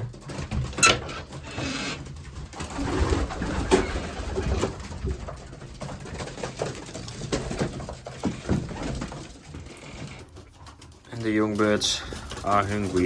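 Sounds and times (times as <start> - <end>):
clicks and rustles of birds feeding: 0.0 - 13.0
pigeons cooing: 0.7 - 11.1.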